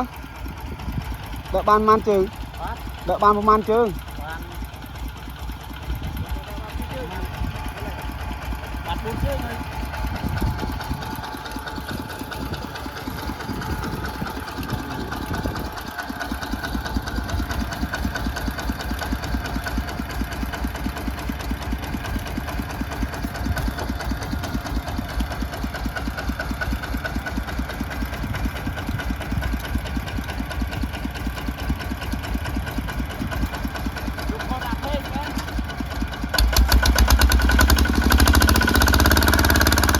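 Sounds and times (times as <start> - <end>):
tractor engine chugging: 0.0 - 39.9.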